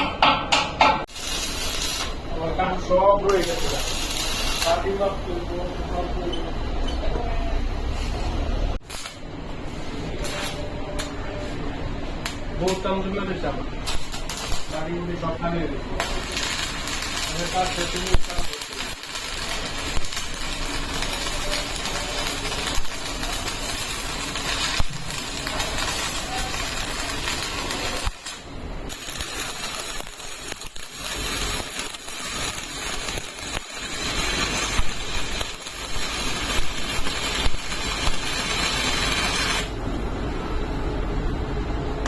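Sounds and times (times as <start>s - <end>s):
welding arc crackling: 1.0s - 5.7s, 8.8s - 9.3s, 13.8s - 39.9s.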